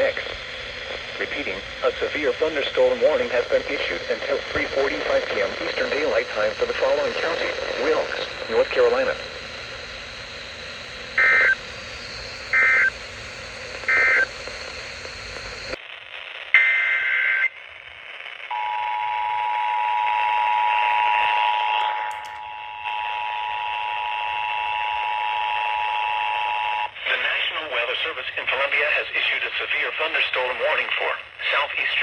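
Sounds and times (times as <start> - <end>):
data tone bursts: 0.0 - 15.8.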